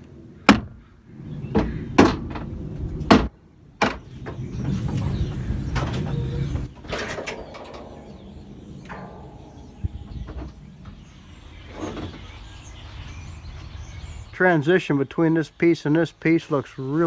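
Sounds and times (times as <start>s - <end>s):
low rumbling scrape: 4.1s - 14.3s.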